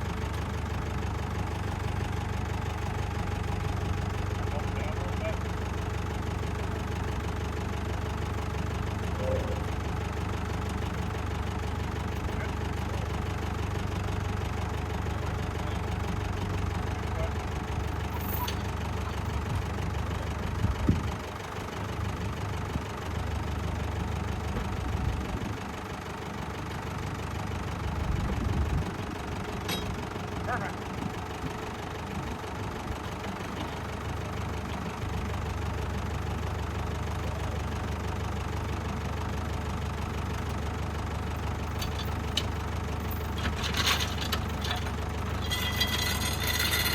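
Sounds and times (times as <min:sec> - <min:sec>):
tractor engine idling: 0:00.0 - 0:46.9
sharp clunk: 0:29.7 - 0:30.0.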